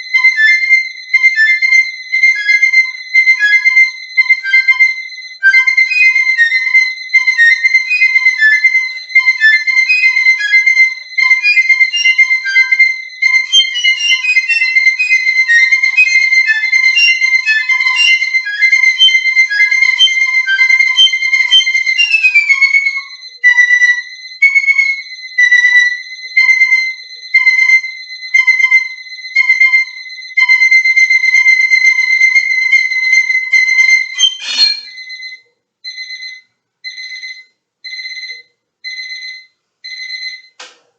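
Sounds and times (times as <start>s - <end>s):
alarm clock beeping: 0.0s - 40.6s
piccolo playing quick notes: 33.5s - 35.0s.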